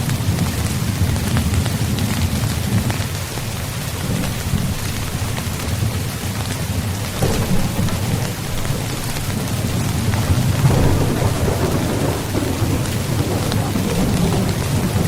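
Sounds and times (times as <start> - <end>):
heavy rain: 0.0 - 15.0
low rumble of thunder: 4.0 - 15.0.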